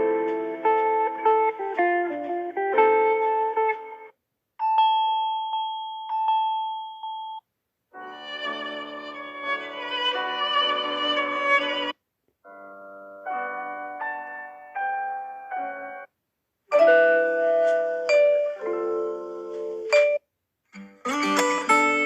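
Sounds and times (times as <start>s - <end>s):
melodic ringtone: 4.6s - 7.4s, 8.0s - 11.9s, 16.7s - 20.2s.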